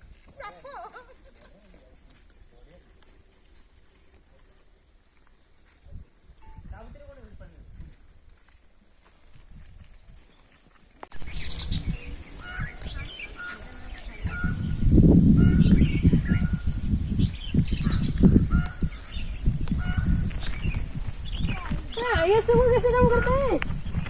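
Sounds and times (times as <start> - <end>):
other birds calling: 10.0 - 24.0
low rumbling microphone noise: 11.1 - 24.0
crows cawing: 12.4 - 14.7, 17.8 - 20.3.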